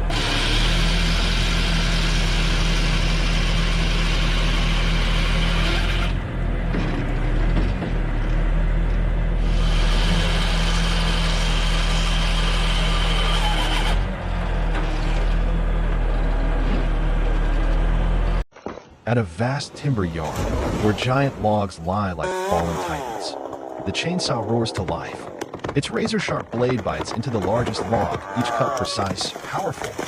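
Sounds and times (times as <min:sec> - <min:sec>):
heavy engine running: 0:00.0 - 0:18.4.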